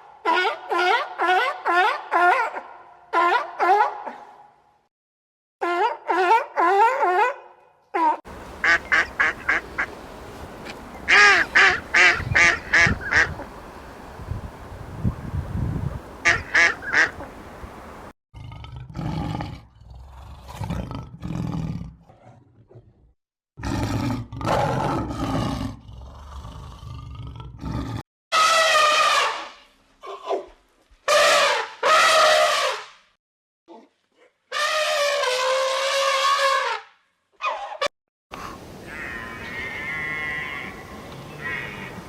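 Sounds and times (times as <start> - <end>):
quick repeated animal calls: 8.3 - 14.6, 16.1 - 18.0
low rough animal calls: 8.3 - 18.1.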